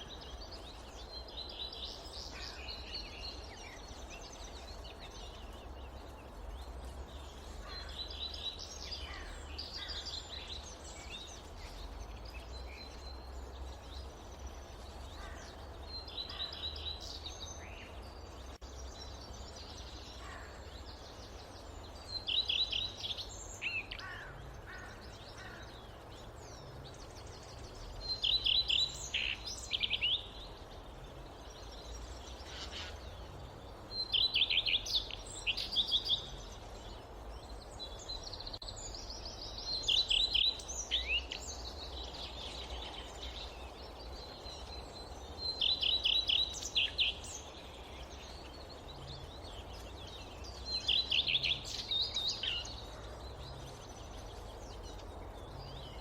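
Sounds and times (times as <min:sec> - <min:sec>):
songbird singing: 0:00.0 - 0:56.0
other birds calling: 0:31.8 - 0:38.3.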